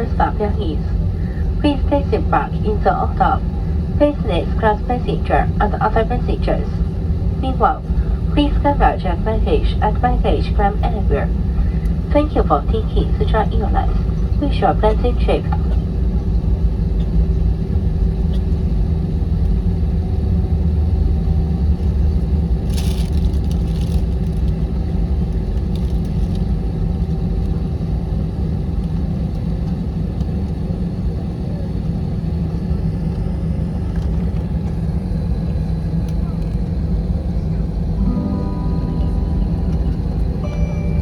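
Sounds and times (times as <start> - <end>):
airliner engines rumbling: 0.0 - 41.0
faint steady hum: 33.5 - 41.0
steady held tones: 38.0 - 41.0.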